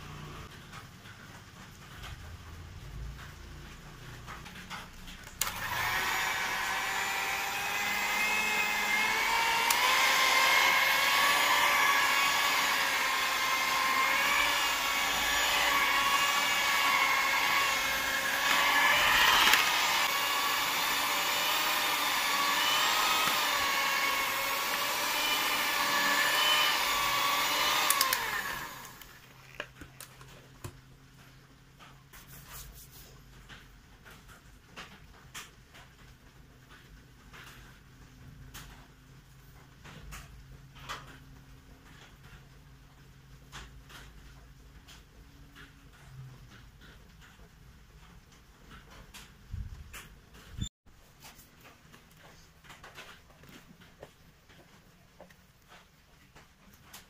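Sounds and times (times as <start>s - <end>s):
electric mixer motor whining: 5.3s - 29.7s.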